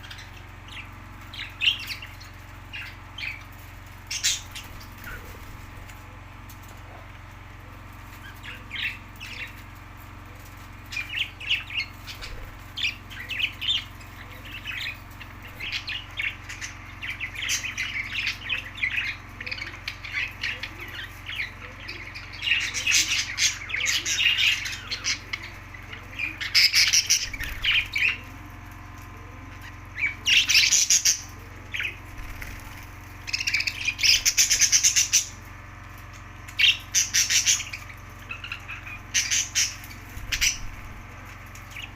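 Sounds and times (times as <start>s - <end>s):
budgerigars chirping: 4.0s - 5.4s, 10.9s - 28.3s, 29.6s - 35.4s, 36.5s - 41.0s
budgerigars squawking: 36.6s - 40.8s.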